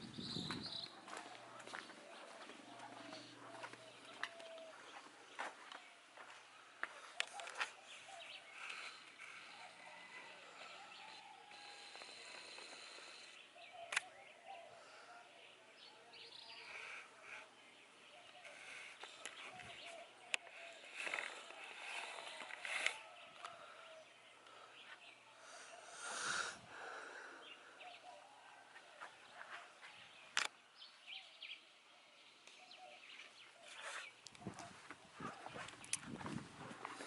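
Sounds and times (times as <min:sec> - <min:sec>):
birds chirping and calling: 0:00.0 - 0:37.0
faint outdoor ambience: 0:00.0 - 0:37.0
sharp clicks: 0:13.9 - 0:14.1.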